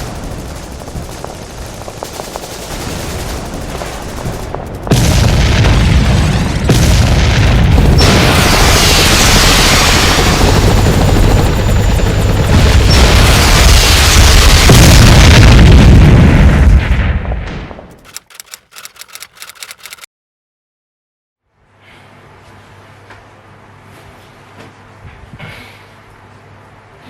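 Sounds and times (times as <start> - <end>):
loud boom with deep rumble: 4.5 - 10.4, 12.6 - 17.9.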